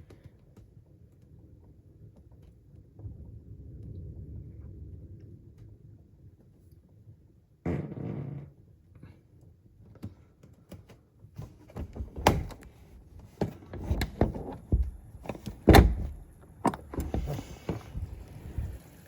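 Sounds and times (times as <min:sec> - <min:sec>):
knocks and thumps: 0:11.4 - 0:18.8.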